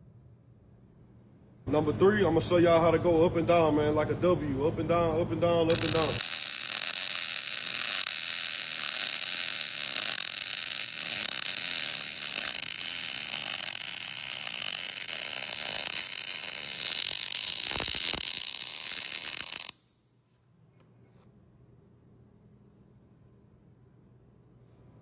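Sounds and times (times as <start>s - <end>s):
welding arc crackling: 5.7s - 19.9s.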